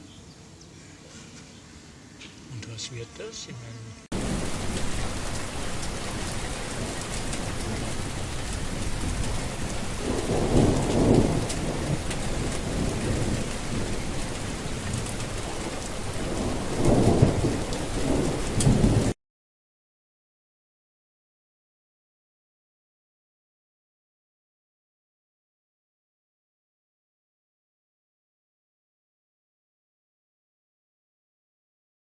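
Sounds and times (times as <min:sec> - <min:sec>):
heavy rain: 0:04.1 - 0:19.2
thunder rolling: 0:04.1 - 0:19.2.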